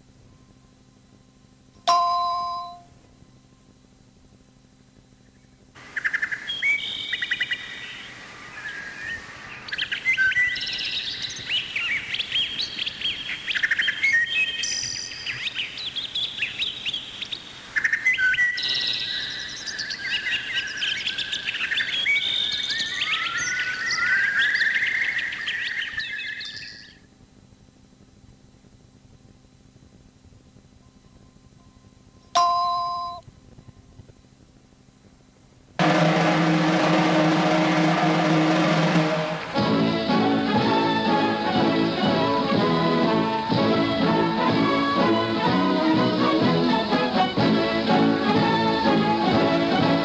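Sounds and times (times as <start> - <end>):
songbirds chirping and warbling: 5.2 - 27.0, 39.7 - 50.0.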